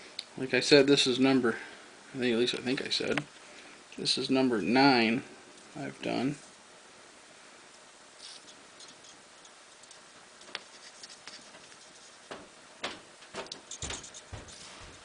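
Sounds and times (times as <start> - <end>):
dull knocks: 12.3 - 15.0.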